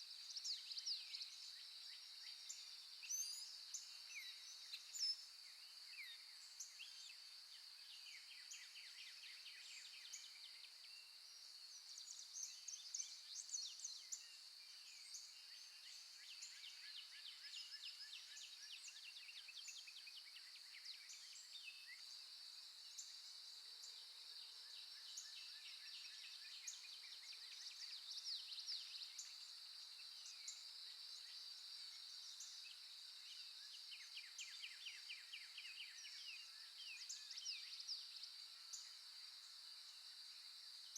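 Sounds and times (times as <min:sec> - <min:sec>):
small birds chirping: 0:00.0 - 0:22.2.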